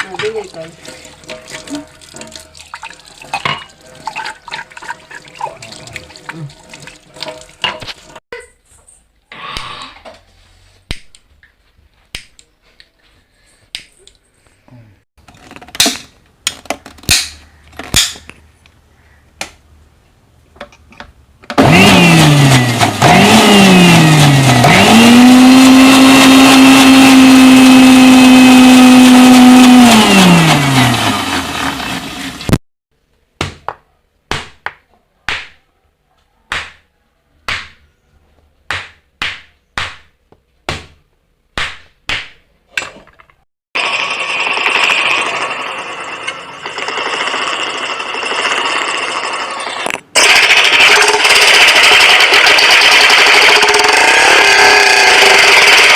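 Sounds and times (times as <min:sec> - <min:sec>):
electric mixer grinder running: 0:21.6 - 0:32.5, 0:43.8 - 0:55.9.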